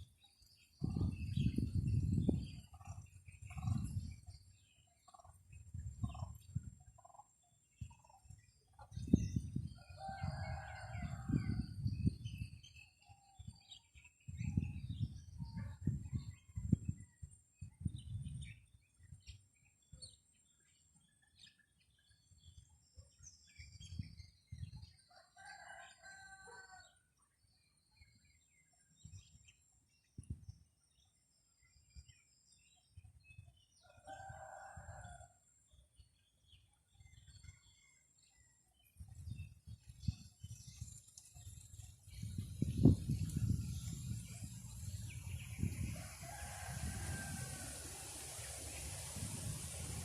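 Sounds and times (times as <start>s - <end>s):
wind gusts on microphone: 0.0s - 4.8s, 5.4s - 20.2s, 23.2s - 26.9s, 33.0s - 35.3s, 39.0s - 50.0s
rooster-like crow: 9.8s - 11.8s, 25.1s - 27.0s, 33.8s - 35.4s, 45.8s - 50.0s.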